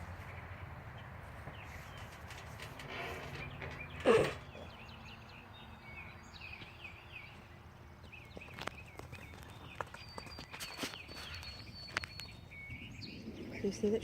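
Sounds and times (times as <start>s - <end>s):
low outdoor rumble: 0.0s - 6.4s
small birds chirping: 0.0s - 14.0s.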